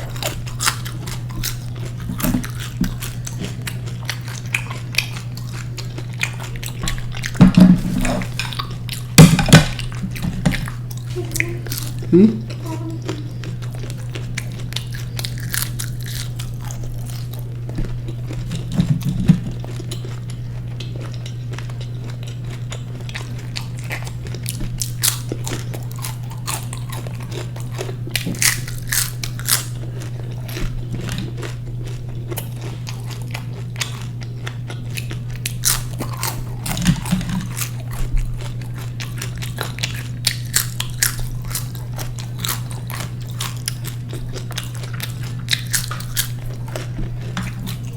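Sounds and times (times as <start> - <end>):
person chewing crunchy food: 0.0 - 47.9
steady low hum: 0.0 - 47.9.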